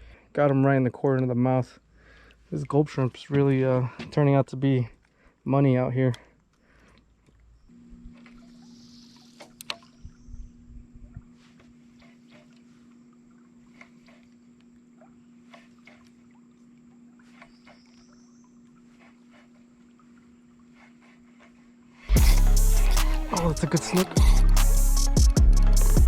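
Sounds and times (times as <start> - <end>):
electric trolling motor humming: 7.6 - 26.0.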